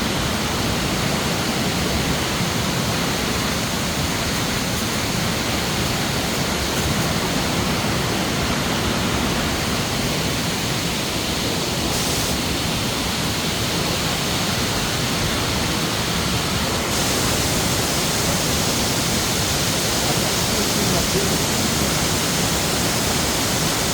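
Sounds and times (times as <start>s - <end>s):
waterfall roaring: 0.0s - 23.9s.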